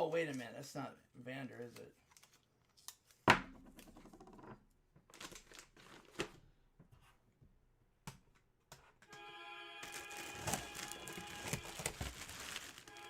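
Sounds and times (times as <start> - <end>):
packaging rustling: 5.1 - 6.4, 9.8 - 13.0.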